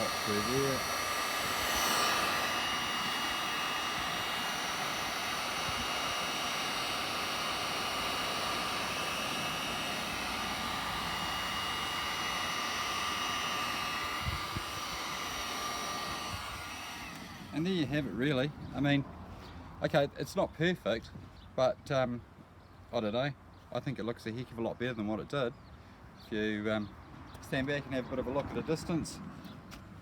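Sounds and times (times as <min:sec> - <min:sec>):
heat gun blowing: 0:00.0 - 0:18.4.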